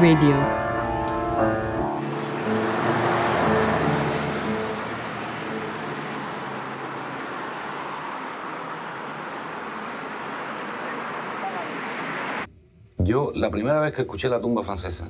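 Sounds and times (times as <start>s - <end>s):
music: 0.0s - 7.4s
street traffic noise: 0.0s - 12.5s.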